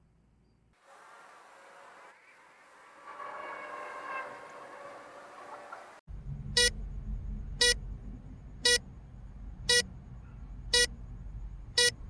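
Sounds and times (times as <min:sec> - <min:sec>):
low rumble: 0:06.1 - 0:12.0.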